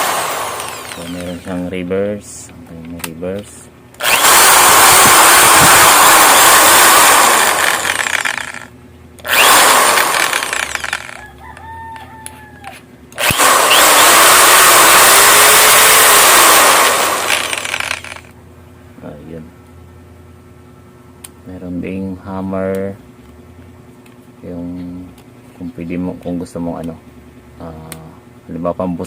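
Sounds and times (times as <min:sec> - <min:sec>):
electric drill whining: 0:00.0 - 0:01.6, 0:04.0 - 0:11.2, 0:13.2 - 0:18.3.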